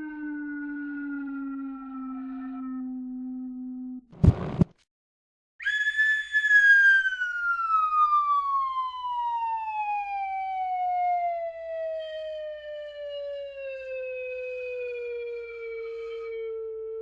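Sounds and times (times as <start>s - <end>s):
slide whistle falling note: 5.6s - 7.8s.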